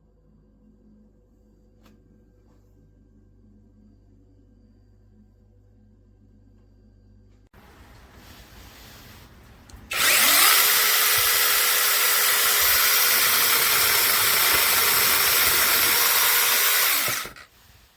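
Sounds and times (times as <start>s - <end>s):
electric pole saw whining: 9.9s - 17.5s.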